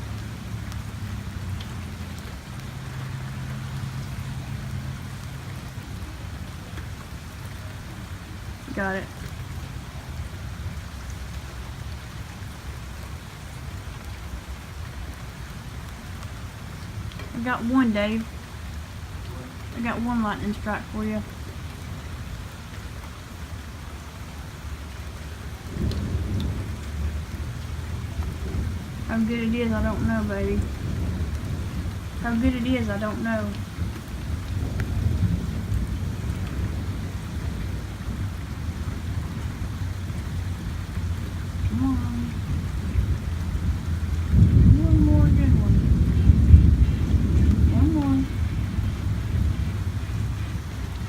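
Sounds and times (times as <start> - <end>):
steady rain falling: 0.0 - 51.0
thunder rumbling: 25.2 - 51.0.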